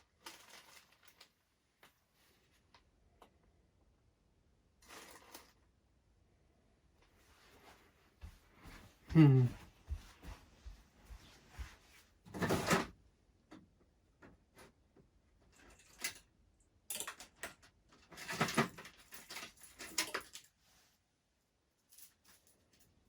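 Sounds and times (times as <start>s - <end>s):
rustling and clattering parts: 0.1s - 1.9s, 9.9s - 12.9s, 15.4s - 20.8s.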